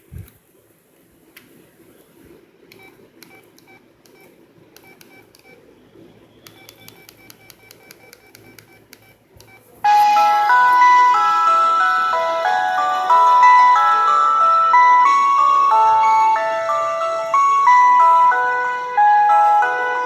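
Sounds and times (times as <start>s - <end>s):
phone keypad beeps: 2.7s - 5.6s, 6.4s - 11.0s
melodic phone ringtone: 9.8s - 20.0s.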